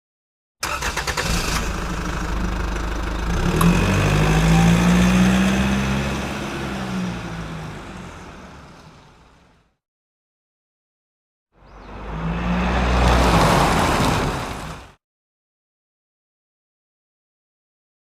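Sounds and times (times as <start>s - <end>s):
car engine cranking and revving: 0.6s - 9.3s.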